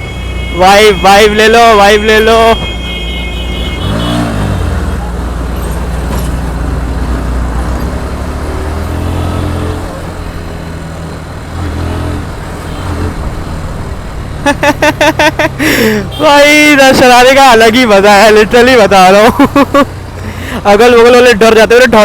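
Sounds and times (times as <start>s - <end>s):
motorcycle engine revving: 3.5s - 16.2s.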